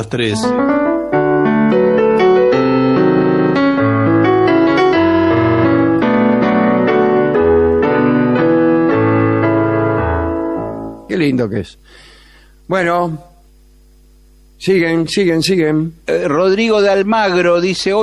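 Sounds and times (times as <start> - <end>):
piano playing: 0.0 - 11.6.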